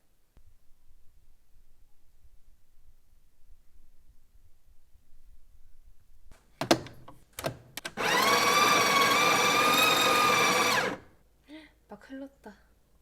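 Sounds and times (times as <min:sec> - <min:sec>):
appliance motor whining: 0:07.8 - 0:11.1.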